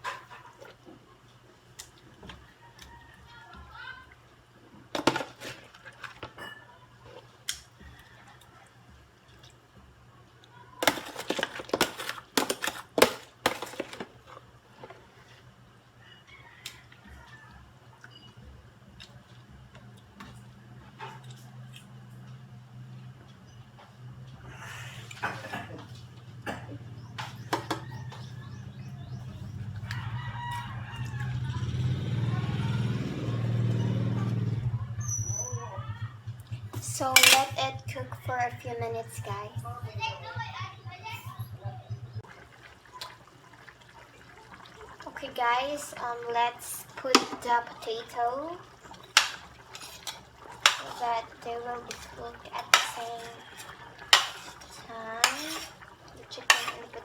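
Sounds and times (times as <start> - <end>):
kitchenware clattering: 5.0 - 6.8, 10.8 - 14.3, 26.5 - 29.2, 36.8 - 38.0, 49.0 - 57.0
steady low hum: 35.7 - 42.3.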